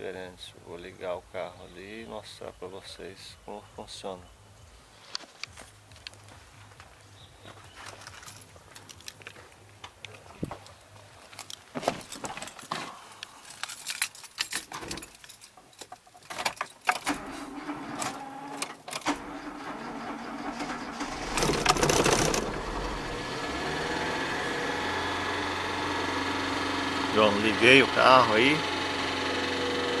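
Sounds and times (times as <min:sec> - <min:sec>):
keys rattling: 0:07.8 - 0:09.7, 0:13.3 - 0:17.1
car engine starting and idling: 0:17.0 - 0:30.0.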